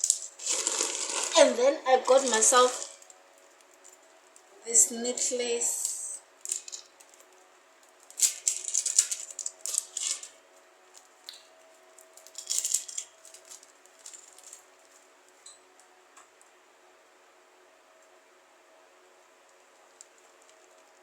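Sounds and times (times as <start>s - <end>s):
packaging rustling: 0.0s - 4.5s, 6.4s - 11.2s, 11.8s - 15.1s.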